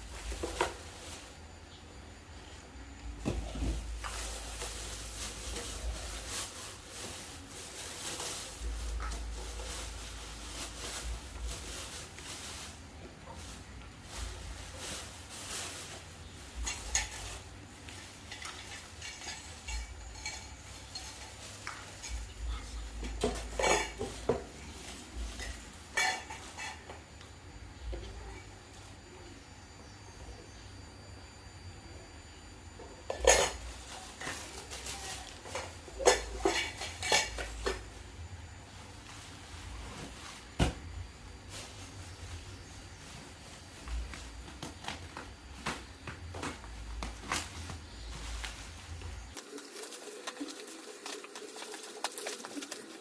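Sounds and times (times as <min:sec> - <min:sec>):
utensils and pots clinking: 0:14.2 - 0:27.1, 0:33.0 - 0:38.1.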